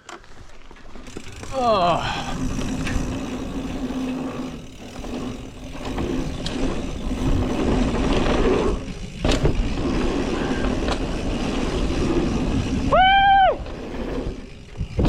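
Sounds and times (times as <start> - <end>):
bike rattling: 0.0 - 15.0
tyres rumbling over dirt: 0.0 - 15.0.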